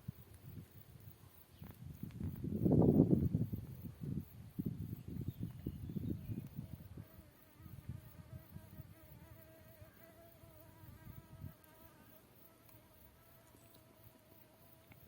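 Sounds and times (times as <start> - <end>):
insect buzzing: 0.0 - 15.0.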